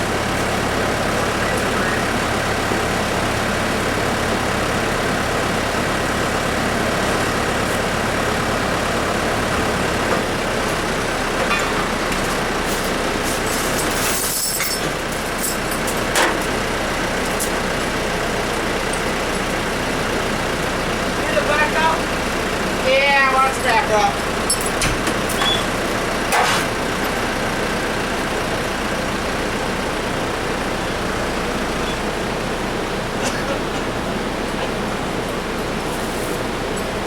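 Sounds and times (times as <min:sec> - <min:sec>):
engine running steadily: 0:00.0 - 0:37.0.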